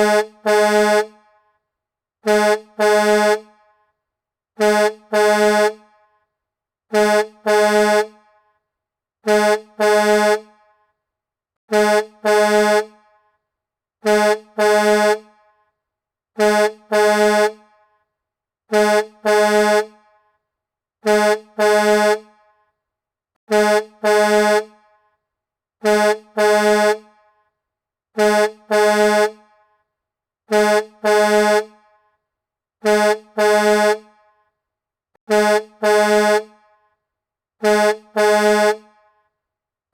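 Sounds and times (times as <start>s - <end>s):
truck horn short blasts: 0.0s - 1.2s, 2.2s - 3.6s, 4.6s - 6.0s, 6.9s - 8.4s, 9.2s - 10.6s, 11.7s - 13.2s, 14.0s - 15.4s, 16.4s - 17.8s, 18.7s - 20.0s, 21.0s - 22.4s, 23.5s - 24.9s, 25.8s - 27.2s, 28.2s - 29.6s, 30.5s - 31.9s, 32.8s - 34.2s, 35.3s - 36.7s, 37.6s - 39.2s.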